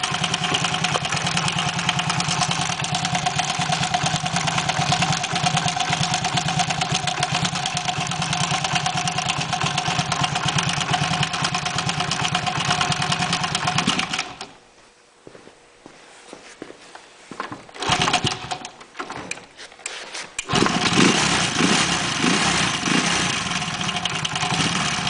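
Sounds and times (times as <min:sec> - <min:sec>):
engine idling: 0:00.0 - 0:14.5, 0:20.5 - 0:25.0.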